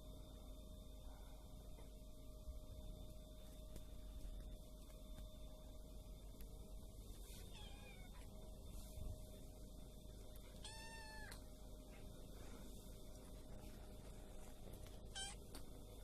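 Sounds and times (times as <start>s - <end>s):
cat meowing: 7.5s - 8.3s, 10.6s - 11.4s, 15.1s - 15.4s.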